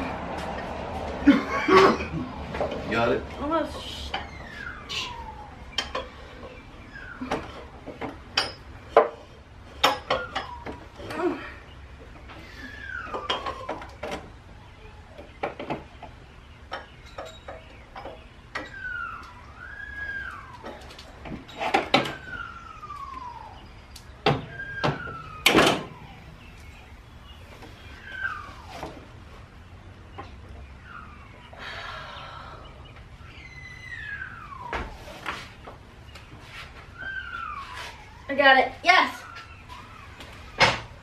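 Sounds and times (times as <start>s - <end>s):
high squeaky sliding tones: 36.6s - 40.6s.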